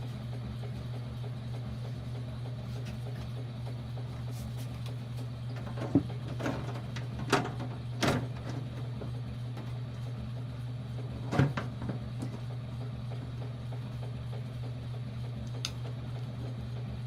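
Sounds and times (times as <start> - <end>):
steady low hum: 0.0 - 17.0
objects knocking and scraping: 5.6 - 8.8.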